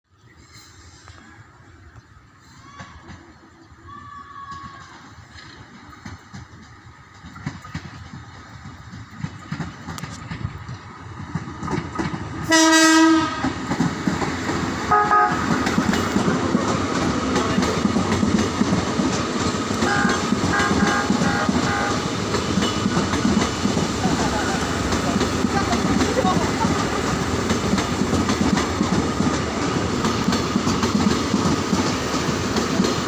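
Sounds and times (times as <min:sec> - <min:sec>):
train wheels clattering on rails: 0:02.6 - 0:33.0
short train horn toots: 0:12.5 - 0:13.5, 0:14.9 - 0:15.5, 0:19.8 - 0:22.9
train horn blast: 0:12.5 - 0:13.5, 0:14.9 - 0:15.6, 0:19.8 - 0:22.9.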